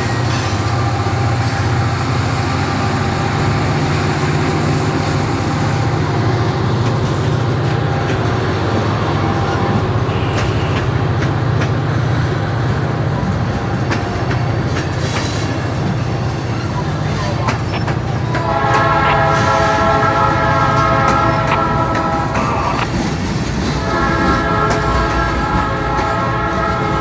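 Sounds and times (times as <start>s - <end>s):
heavy diesel engine rumble: 0.0s - 27.0s
wheels clicking over rail joints: 6.2s - 27.0s.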